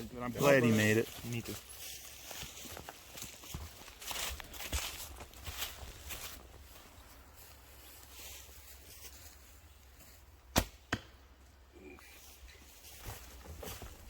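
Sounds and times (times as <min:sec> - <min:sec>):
arrow striking target: 0:10.5 - 0:11.2.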